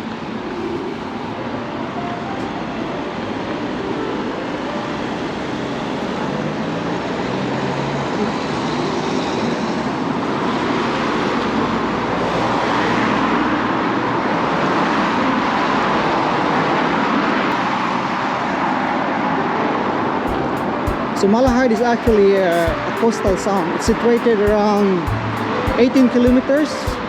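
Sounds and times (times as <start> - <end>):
road traffic hiss: 20.3 - 27.0.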